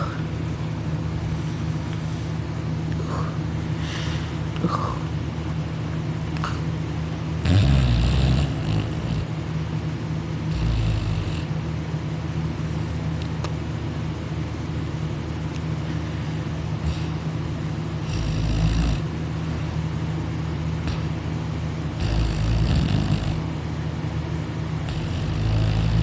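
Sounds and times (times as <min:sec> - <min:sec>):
steady low hum: 0:00.0 - 0:26.0
man snoring loudly: 0:07.4 - 0:09.3, 0:10.5 - 0:11.5, 0:16.8 - 0:17.2, 0:18.0 - 0:19.0, 0:22.0 - 0:23.4, 0:24.9 - 0:26.0.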